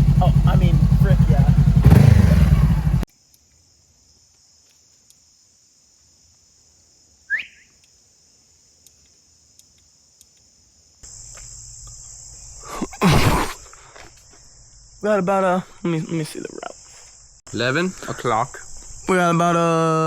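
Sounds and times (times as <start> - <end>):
crickets chirping: 0.0 - 20.0
short rising chirp: 7.3 - 7.7.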